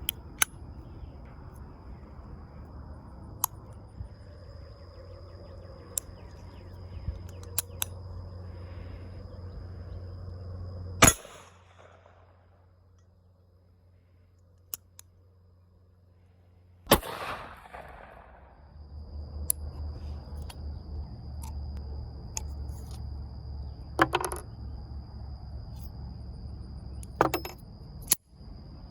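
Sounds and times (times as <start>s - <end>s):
handling clicks: 7.2s - 8.0s
gunshots: 11.0s - 12.2s, 16.9s - 18.6s.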